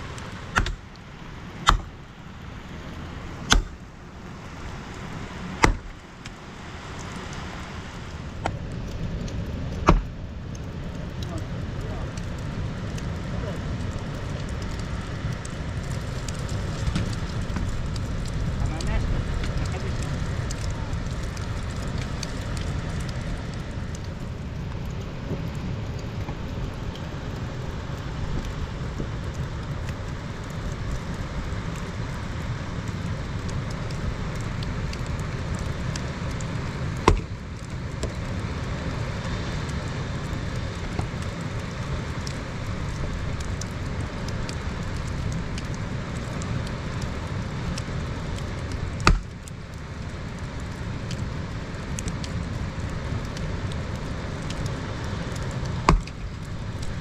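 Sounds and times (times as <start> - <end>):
steady rain: 0.0 - 57.0
sharp knocks: 1.6 - 1.9.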